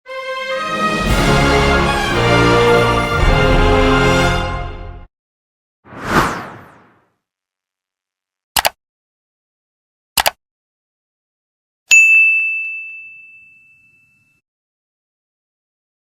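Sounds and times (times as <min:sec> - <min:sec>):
double clicks: 0:08.6 - 0:08.8, 0:10.2 - 0:10.4
bright high ding: 0:11.9 - 0:14.4.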